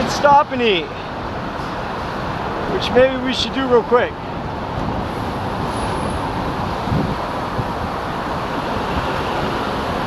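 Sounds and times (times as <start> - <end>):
road traffic: 0.0 - 10.0
wind on microphone: 4.4 - 10.0.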